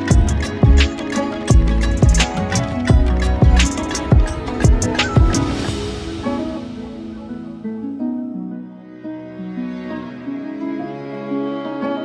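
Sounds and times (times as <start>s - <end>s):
background music with drum beat: 0.0s - 7.2s.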